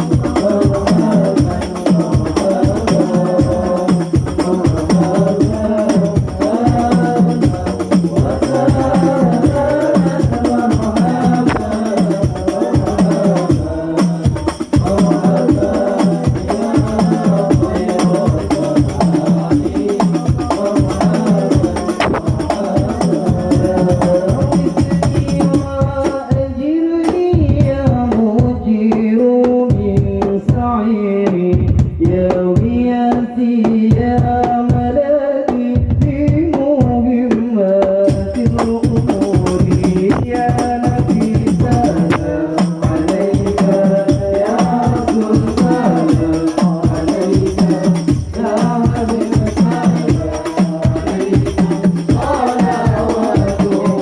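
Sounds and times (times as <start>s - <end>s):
person singing: 0.0s - 34.2s, 37.2s - 54.0s
hand drum and tambourine rhythm: 0.0s - 54.0s.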